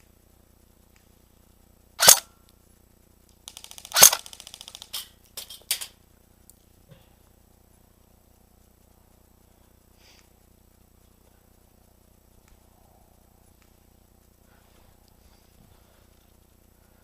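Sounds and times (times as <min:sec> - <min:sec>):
airsoft gun shots: 0:02.0 - 0:02.3, 0:03.5 - 0:05.9
loud crack: 0:03.5 - 0:06.0.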